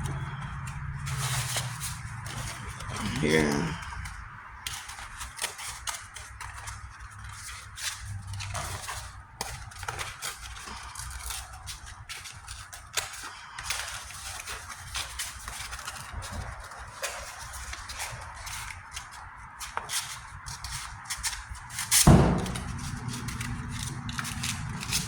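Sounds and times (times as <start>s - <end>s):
steady low rumble: 0.0s - 4.3s.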